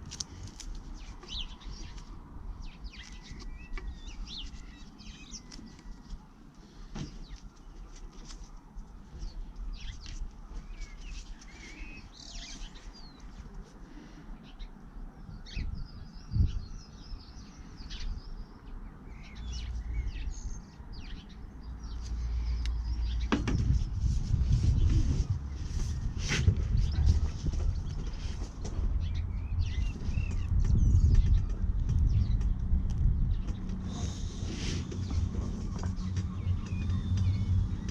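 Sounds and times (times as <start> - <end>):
low outdoor rumble: 0.0 - 37.9
small birds chirping: 0.0 - 37.9
knocking and handling noise: 23.3 - 24.0.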